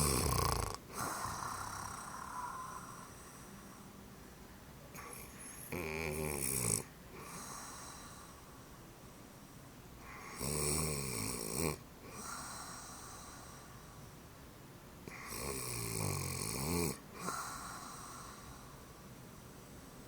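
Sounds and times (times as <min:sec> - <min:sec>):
woman snoring: 0:00.0 - 0:03.3, 0:05.0 - 0:08.3, 0:10.1 - 0:13.6, 0:15.1 - 0:18.5
soft breath: 0:00.9 - 0:04.0, 0:07.1 - 0:10.4, 0:12.0 - 0:14.2, 0:17.1 - 0:20.0.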